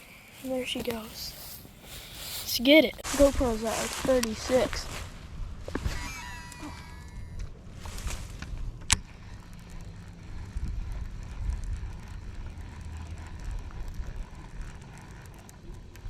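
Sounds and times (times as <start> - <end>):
wind on microphone: 3.0 - 14.9
fishing reel ticking: 6.0 - 16.0.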